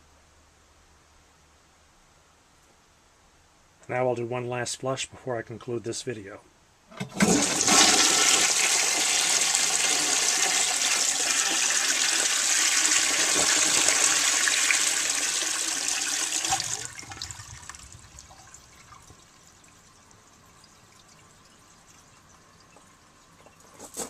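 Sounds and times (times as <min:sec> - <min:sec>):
toilet flushing: 0:06.9 - 0:21.1
water trickling: 0:07.0 - 0:24.0.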